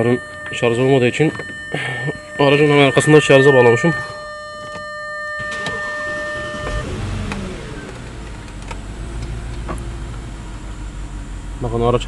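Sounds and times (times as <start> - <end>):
car engine starting and revving: 5.5 - 12.0.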